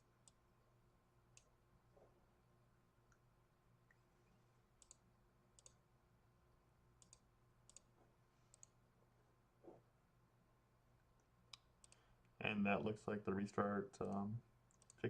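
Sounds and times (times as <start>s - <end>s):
low room hum: 0.0s - 15.0s
computer mouse clicks: 0.2s - 0.4s, 4.8s - 5.0s, 5.6s - 5.8s, 7.0s - 7.9s, 8.5s - 8.8s, 11.5s - 12.1s, 14.0s - 15.0s.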